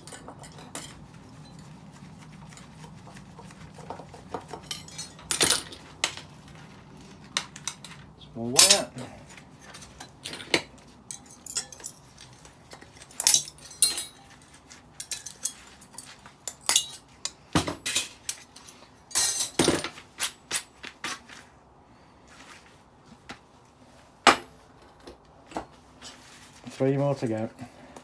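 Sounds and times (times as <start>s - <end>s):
metal parts clinking: 0.0s - 1.6s, 4.6s - 6.4s, 8.6s - 8.9s, 9.6s - 19.9s.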